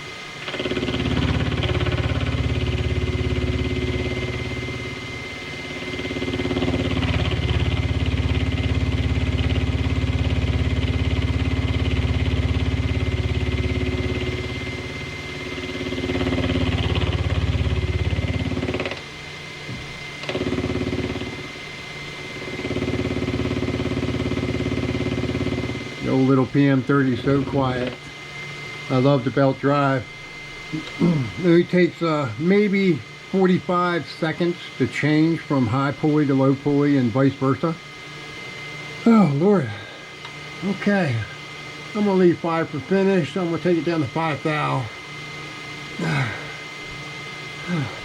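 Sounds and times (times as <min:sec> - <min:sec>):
milling machine humming: 0:00.0 - 0:48.0.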